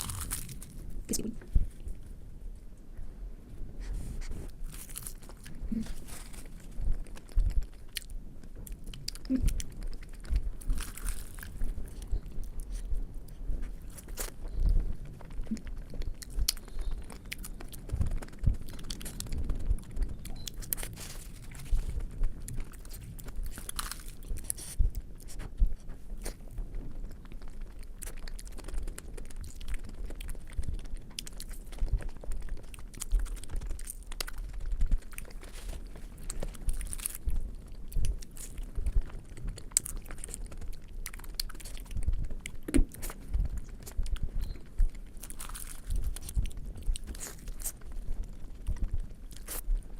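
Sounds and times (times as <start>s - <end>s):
chewing and mouth sounds: 0.0s - 3.1s, 3.8s - 49.9s.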